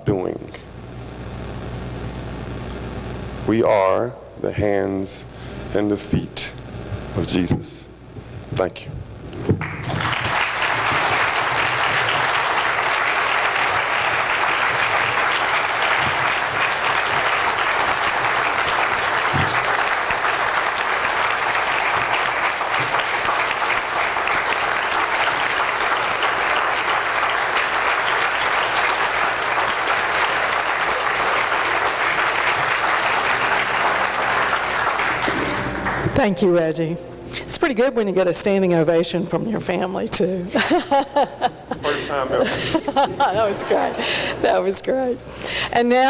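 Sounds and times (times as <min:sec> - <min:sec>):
audience clapping: 0:09.5 - 0:36.6.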